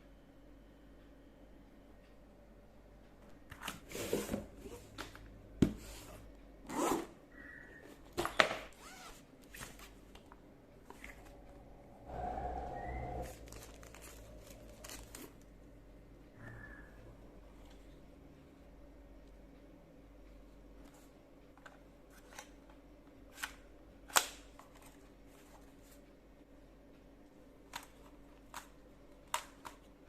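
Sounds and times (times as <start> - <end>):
packaging rustling: 13.2 - 15.4.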